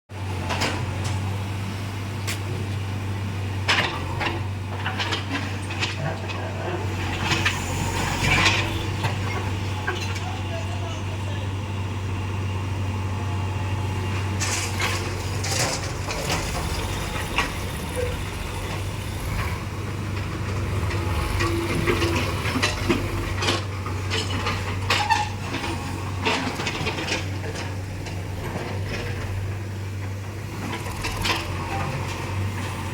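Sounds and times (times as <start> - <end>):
machine engine hum: 0.2 - 32.9
metal clanks and knocks: 14.4 - 32.5.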